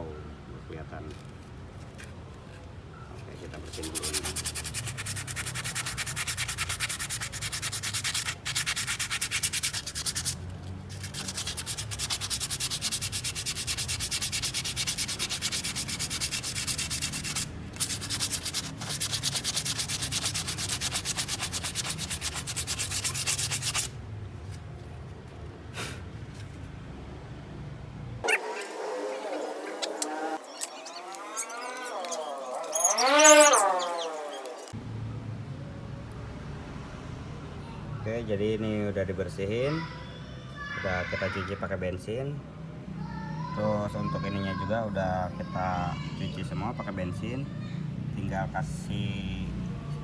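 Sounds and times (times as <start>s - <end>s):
hand scrubbing or sanding: 3.6s - 23.9s.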